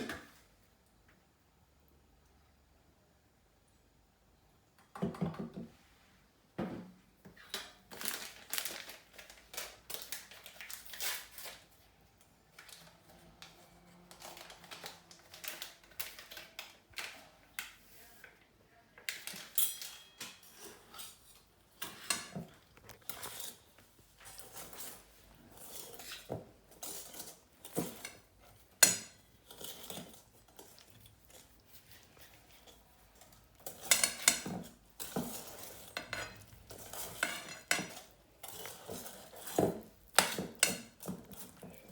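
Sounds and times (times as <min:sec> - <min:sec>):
metal utensil scraping a bowl: 0:19.3 - 0:41.9.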